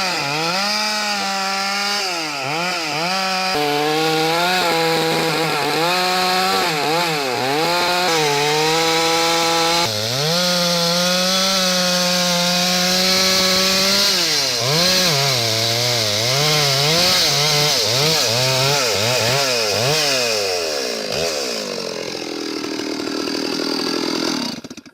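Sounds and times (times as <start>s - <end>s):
chainsaw cutting log: 0.0s - 24.9s.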